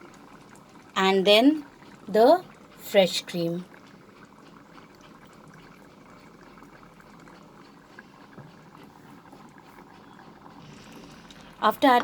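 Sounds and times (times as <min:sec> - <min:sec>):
gravy simmering with small pops: 0:00.0 - 0:12.0.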